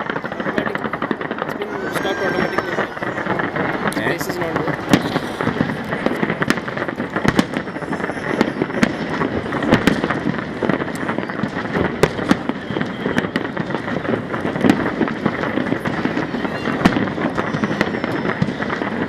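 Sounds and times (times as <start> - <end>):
fireworks bangs: 0.0 - 19.0
fireworks crackling: 0.0 - 19.0.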